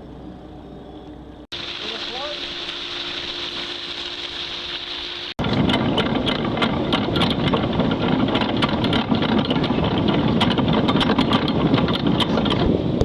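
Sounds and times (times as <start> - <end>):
diesel engine rumbling: 0.0 - 13.0
rapid clattering ticks: 5.4 - 12.7.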